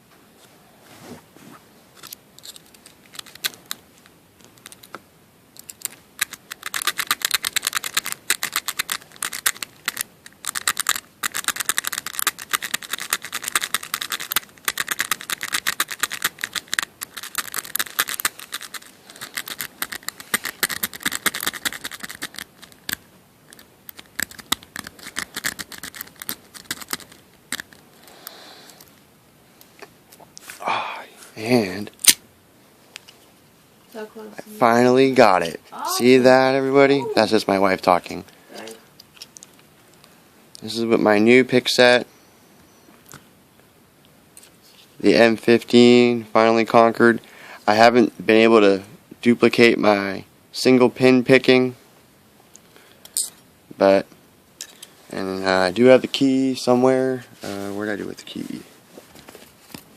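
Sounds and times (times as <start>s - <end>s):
lock pick clicking and scraping: 5.6s - 27.8s.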